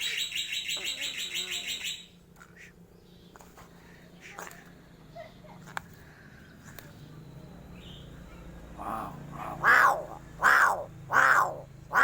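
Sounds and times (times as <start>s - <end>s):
crow cawing: 8.8s - 12.0s.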